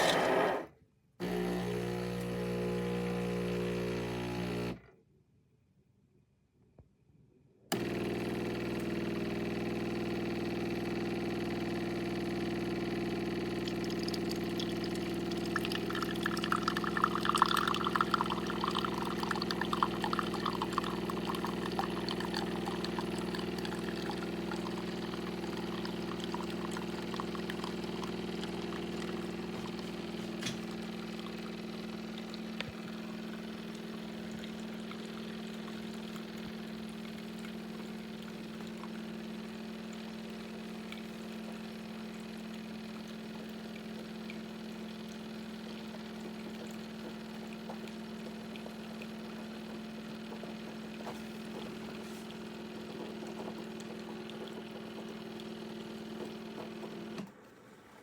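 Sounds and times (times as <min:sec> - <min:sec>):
coffee maker pump humming: 0:00.0 - 0:04.8, 0:07.7 - 0:57.7
coffee trickling into carafe: 0:13.4 - 0:39.1, 0:43.1 - 0:56.5.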